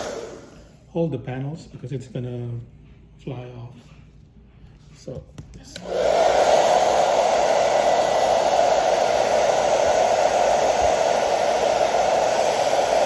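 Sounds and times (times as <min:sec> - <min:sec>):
hair dryer running: 0:00.0 - 0:00.8, 0:05.7 - 0:13.0.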